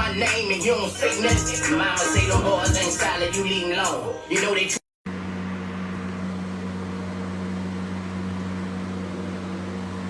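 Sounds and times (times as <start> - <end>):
low mechanical hum: 5.1 - 10.0.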